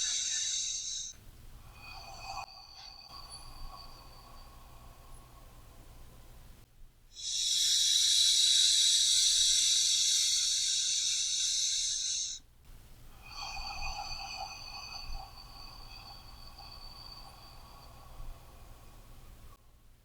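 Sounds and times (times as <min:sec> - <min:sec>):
person exhaling through mouth: 0:00.0 - 0:01.1, 0:07.2 - 0:12.4
whistling breath in through nose: 0:00.0 - 0:06.2, 0:07.2 - 0:12.5, 0:13.2 - 0:19.6.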